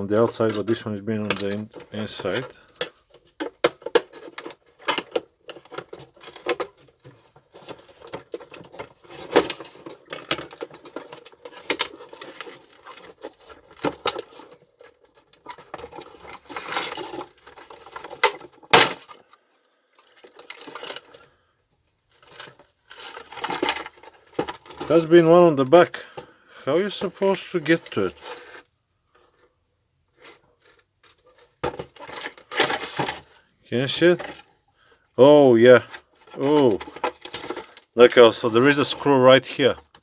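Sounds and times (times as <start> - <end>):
plastic clicks and rattles: 0.2 - 19.4.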